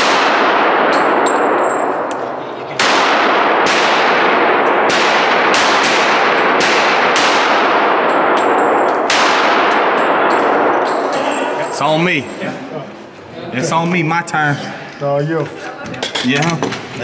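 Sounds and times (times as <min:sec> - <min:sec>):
pistol shots echoing: 0:00.0 - 0:11.8.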